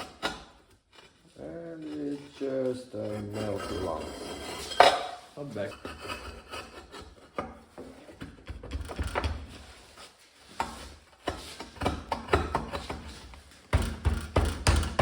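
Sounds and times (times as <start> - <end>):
firebrick scraping and knocking: 1.8 - 9.8.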